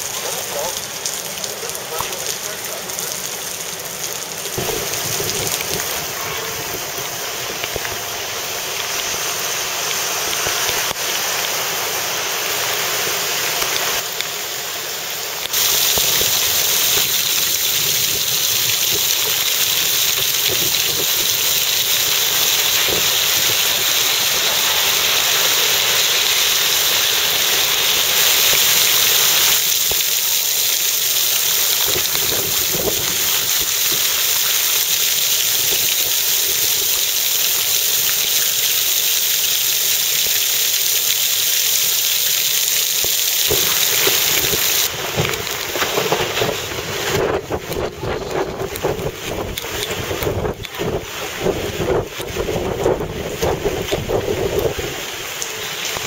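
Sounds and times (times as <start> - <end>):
heavy rain: 0.0 - 56.0
wind buffeting microphone: 31.8 - 34.0, 43.5 - 55.2.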